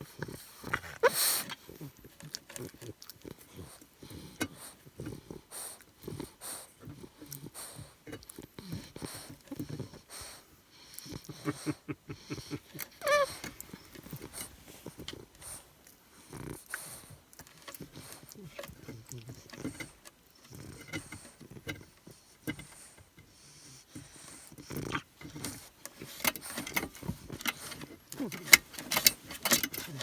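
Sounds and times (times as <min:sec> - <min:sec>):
puppy grunting: 0:00.0 - 0:30.0
puppy yelping: 0:13.0 - 0:13.5.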